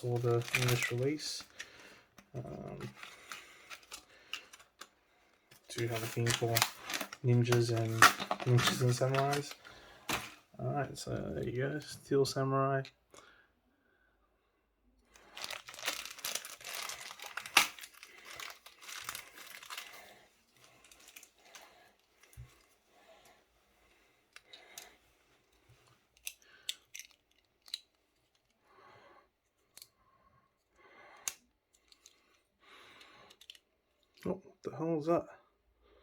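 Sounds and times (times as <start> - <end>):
packaging crinkling and tearing: 0.0 - 4.9, 5.5 - 10.4, 15.2 - 22.4.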